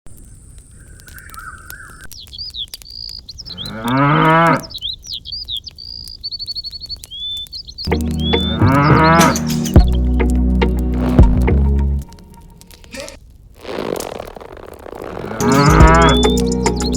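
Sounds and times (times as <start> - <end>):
birds chirping: 0.2 - 11.4, 15.2 - 16.9
music: 7.9 - 12.7, 15.4 - 16.9
cow mooing: 15.2 - 16.2.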